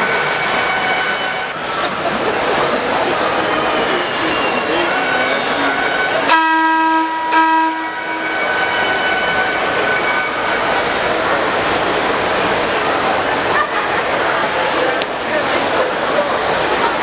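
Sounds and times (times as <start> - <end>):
steady background noise: 0.0 - 17.0
train horn blasts: 6.2 - 10.7.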